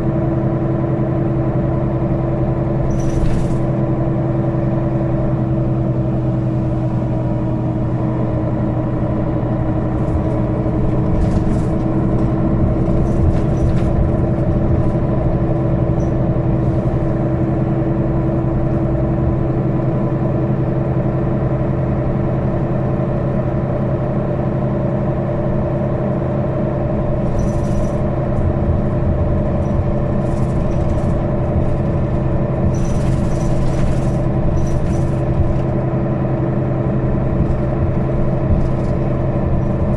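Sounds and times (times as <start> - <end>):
bus engine running: 0.0 - 39.9.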